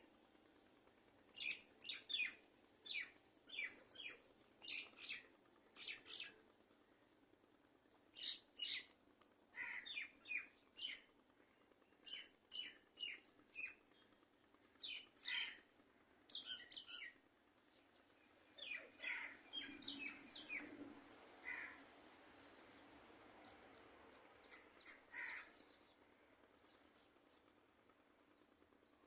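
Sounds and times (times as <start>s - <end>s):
bird chirping: 1.4s - 5.2s, 16.3s - 17.2s, 17.8s - 20.8s.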